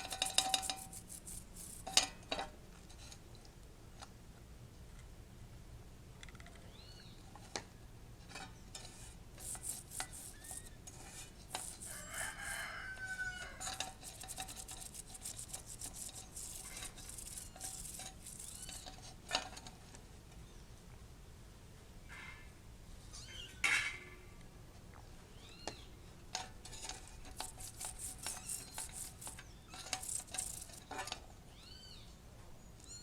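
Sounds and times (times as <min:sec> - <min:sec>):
toothbrush scrubbing bicycle chain: 0:00.0 - 0:02.0, 0:09.4 - 0:10.8, 0:11.4 - 0:12.8, 0:13.6 - 0:18.9, 0:27.3 - 0:30.9.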